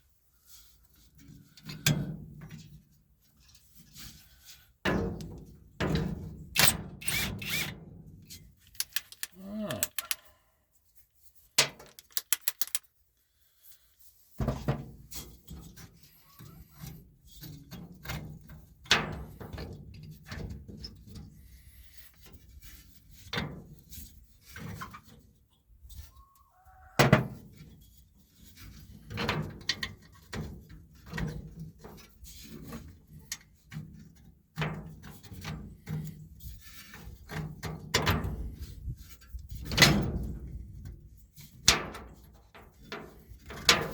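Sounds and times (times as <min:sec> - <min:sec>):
ratchet clicks: 0:06.6 - 0:07.7, 0:08.7 - 0:10.3, 0:11.8 - 0:12.9
metal clinks and knocks: 0:11.7 - 0:12.9.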